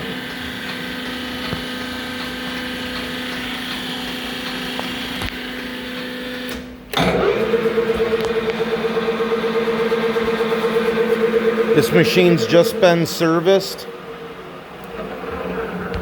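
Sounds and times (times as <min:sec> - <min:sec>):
lathe geared hum: 0:00.0 - 0:05.3, 0:07.0 - 0:16.0.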